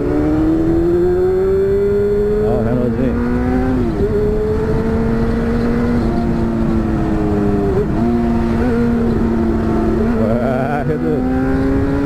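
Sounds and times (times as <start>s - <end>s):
motorcycle engine running: 0.0s - 12.0s.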